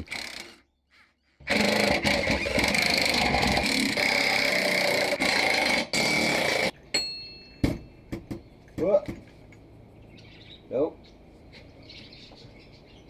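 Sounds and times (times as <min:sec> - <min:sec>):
power tool running: 0:01.4 - 0:06.7.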